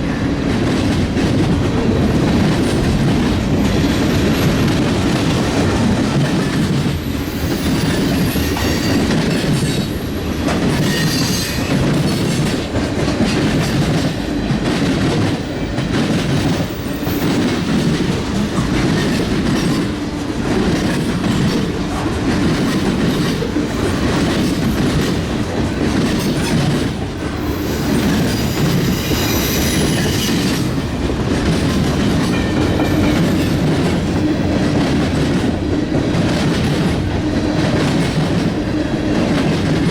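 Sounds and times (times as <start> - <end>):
railroad cars rumbling past: 0.0 - 39.9
wheels clacking over rails: 0.3 - 39.9
high-pitched wheel squeals: 27.4 - 30.6.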